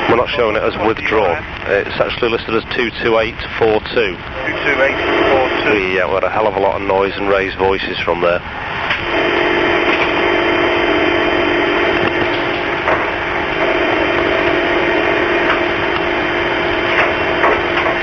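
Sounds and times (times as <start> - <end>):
phone line hiss and hum: 0.0 - 8.2, 8.9 - 18.0.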